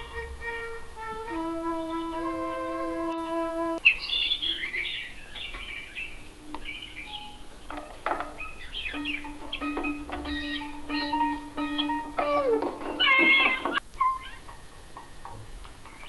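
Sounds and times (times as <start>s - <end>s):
held musical note: 0.0s - 3.8s, 8.9s - 13.6s
high-pitched chirps and trills: 0.0s - 4.7s, 8.4s - 14.4s.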